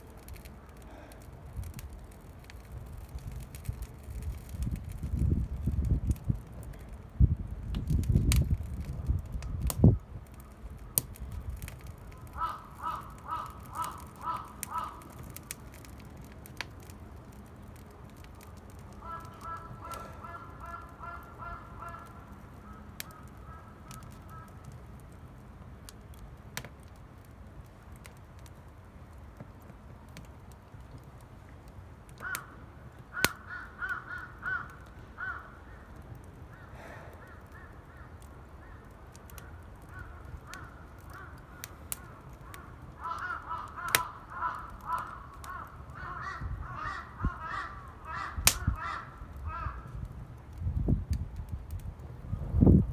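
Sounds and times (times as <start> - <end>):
wood bonfire crackling: 0.0 - 52.9
crows cawing: 12.1 - 15.8, 18.9 - 24.8, 32.1 - 50.0
bird calling: 12.3 - 15.2, 19.0 - 24.5, 43.0 - 49.8
sharp pops: 48.4 - 48.7.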